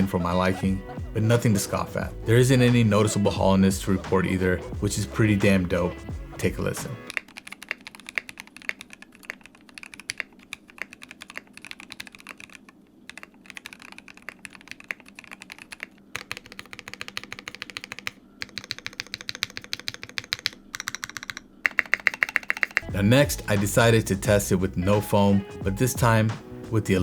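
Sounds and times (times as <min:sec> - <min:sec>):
mechanical keyboard typing: 0:07.1 - 0:22.8.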